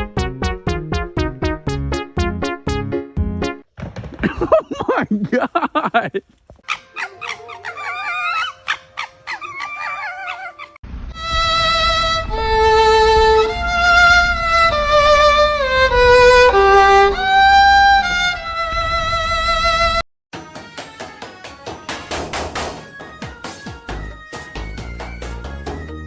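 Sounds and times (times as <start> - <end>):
short wavering high cries: 6.7 - 10.8.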